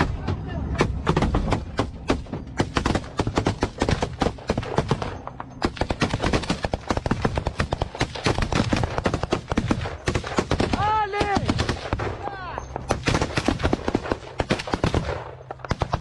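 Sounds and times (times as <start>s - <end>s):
armoured vehicle engine rumble: 0.0s - 7.5s
heavy automatic gunfire: 0.8s - 12.2s, 12.9s - 16.0s.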